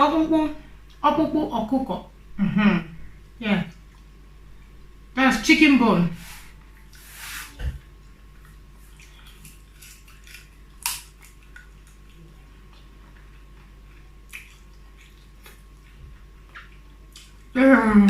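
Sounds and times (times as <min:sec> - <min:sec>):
chewing and crunching bones: 0:08.3 - 0:17.6.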